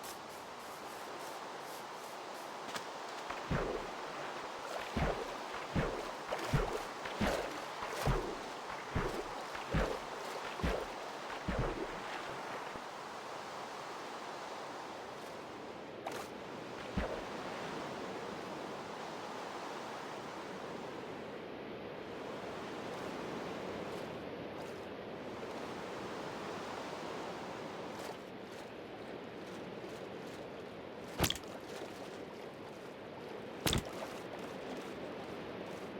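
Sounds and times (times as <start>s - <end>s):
steady rain hiss: 0.0s - 15.8s
soft thuds: 4.7s - 12.0s.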